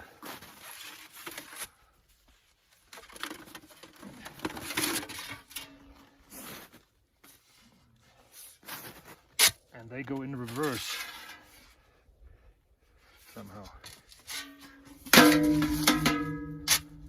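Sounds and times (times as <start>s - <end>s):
sheet metal scraping and rattling: 14.2s - 17.0s.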